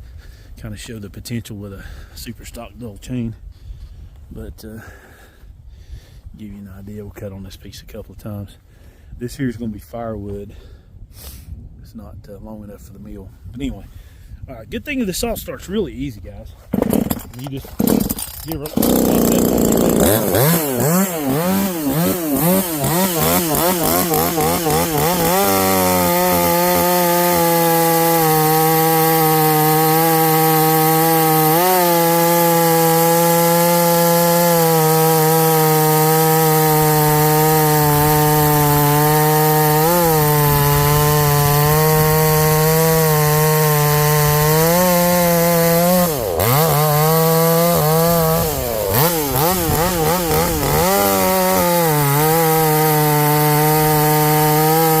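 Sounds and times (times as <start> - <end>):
chainsaw revving and cutting log: 16.7 - 55.0.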